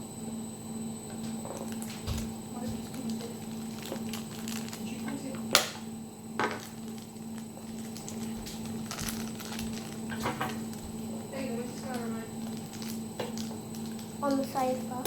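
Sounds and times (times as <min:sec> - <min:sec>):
plastic packaging crackling: 0:01.3 - 0:15.0
plastic snapping: 0:01.5 - 0:10.8.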